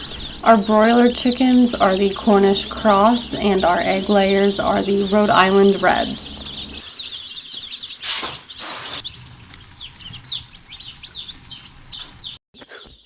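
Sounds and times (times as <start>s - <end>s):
chicks peeping: 0.0s - 13.0s.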